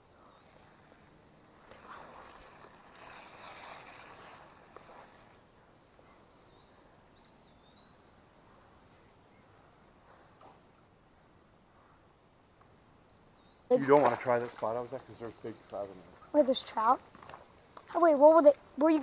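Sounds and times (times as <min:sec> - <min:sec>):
soft rustling: 0:01.6 - 0:06.1.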